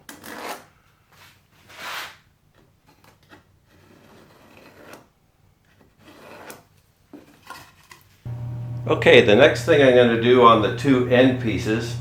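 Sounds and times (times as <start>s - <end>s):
pen scratching on wood: 3.7s - 5.1s, 6.0s - 6.7s.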